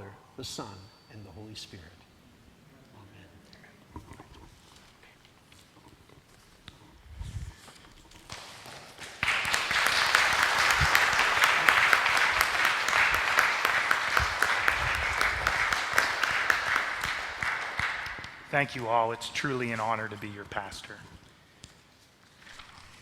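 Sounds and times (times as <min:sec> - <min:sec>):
congregation applauding: 0:08.3 - 0:19.7.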